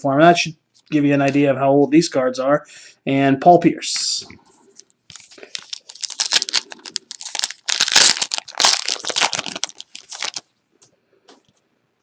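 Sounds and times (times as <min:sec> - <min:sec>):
plastic wrapper crackling: 0:05.1 - 0:10.5.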